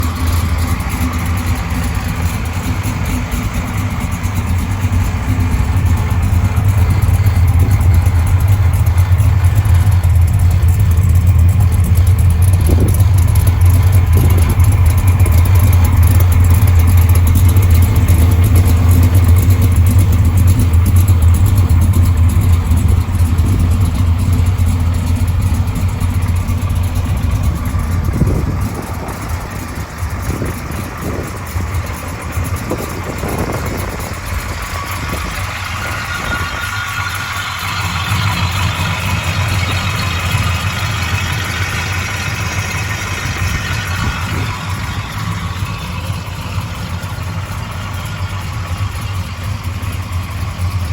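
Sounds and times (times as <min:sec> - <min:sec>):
car engine exhaust rumble: 0:00.0 - 0:50.9.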